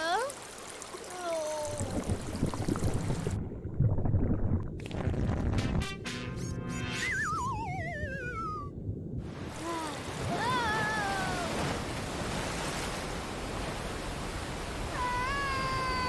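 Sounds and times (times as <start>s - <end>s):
rushing surf: 9.3s - 16.0s.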